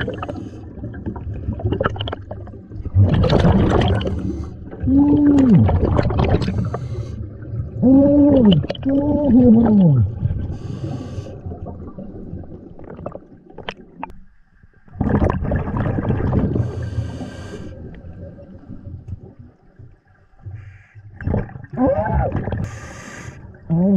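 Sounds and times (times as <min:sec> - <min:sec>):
diver's bubbles underwater: 0:00.0 - 0:14.2, 0:14.8 - 0:17.2, 0:21.1 - 0:22.8.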